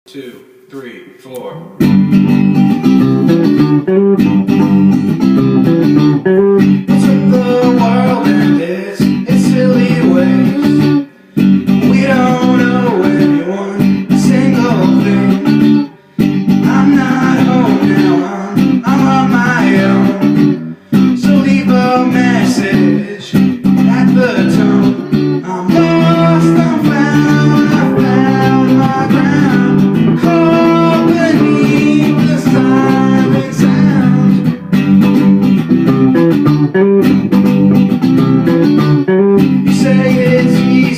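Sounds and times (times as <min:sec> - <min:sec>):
rock band playing: 0:01.8 - 0:40.9.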